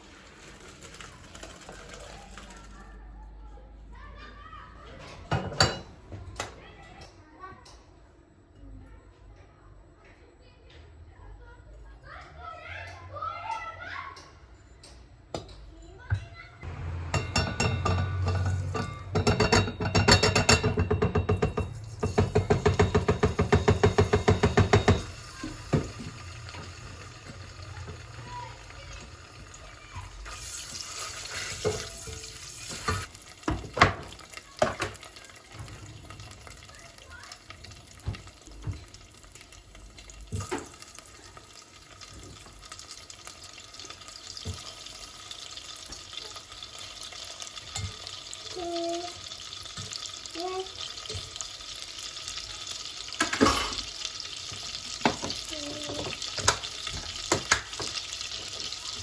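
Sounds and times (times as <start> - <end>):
water running from tap: 0.0 - 2.9, 16.6 - 59.0
dishes clinking and knocking: 4.9 - 7.9, 13.5 - 28.2, 31.5 - 36.4, 38.0 - 39.2, 40.2 - 40.9, 53.1 - 54.0, 54.9 - 58.8.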